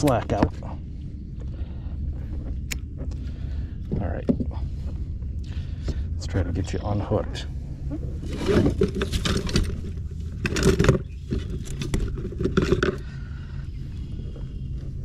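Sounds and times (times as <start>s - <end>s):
low rumble: 0.0s - 15.0s
clattering in a boat: 1.4s - 6.1s, 8.0s - 13.5s.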